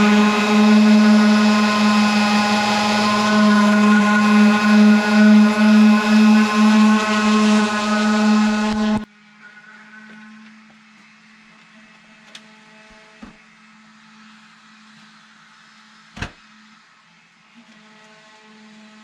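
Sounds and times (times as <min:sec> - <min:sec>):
mechanical hum with hiss: 0:00.0 - 0:19.0.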